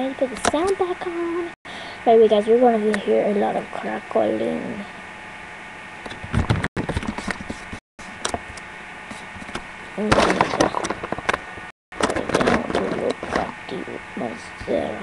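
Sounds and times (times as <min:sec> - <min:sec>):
person speaking: 0:00.0 - 0:05.0, 0:10.0 - 0:11.1, 0:12.0 - 0:15.0
distorted crackling audio: 0:06.1 - 0:14.0.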